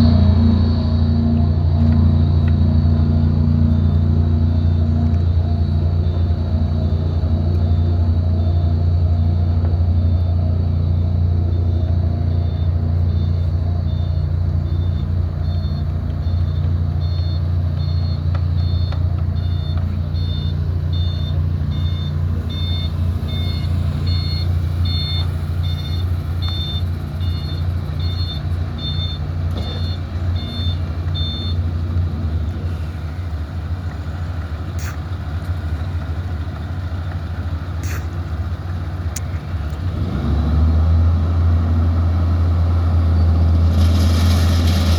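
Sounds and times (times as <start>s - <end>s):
reversing alarm beeping: 0.0s - 32.9s
diesel engine hum: 0.0s - 44.9s.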